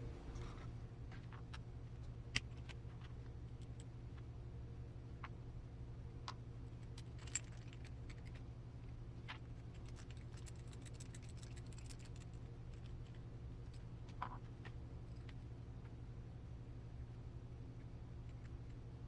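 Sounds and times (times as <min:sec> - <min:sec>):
steady low hum: 0:00.0 - 0:19.0
small plastic parts clicking: 0:09.3 - 0:13.2.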